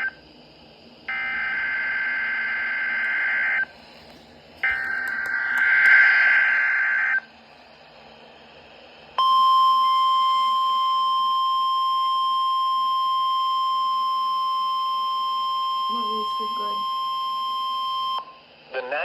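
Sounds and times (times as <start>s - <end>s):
steady warning alarm tone: 1.1s - 3.7s, 12.4s - 18.3s.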